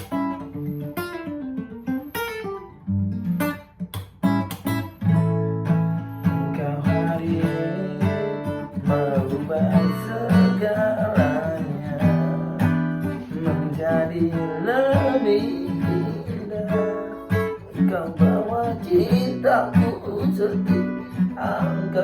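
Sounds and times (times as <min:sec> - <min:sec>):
acoustic guitar strumming chords: 0:00.0 - 0:22.0
wordless vocal melody: 0:06.4 - 0:22.0.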